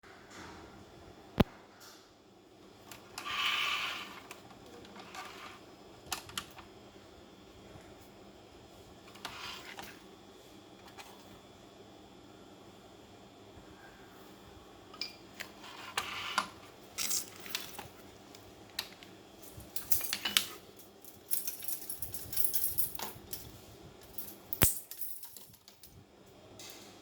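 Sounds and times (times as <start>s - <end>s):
metal parts clinking and rattling: 17.0s - 17.9s, 19.4s - 26.0s.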